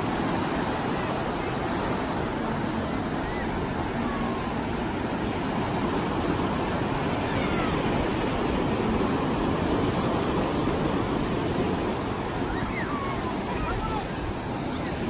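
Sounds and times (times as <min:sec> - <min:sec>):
surf washing onto beach: 0:00.0 - 0:15.0.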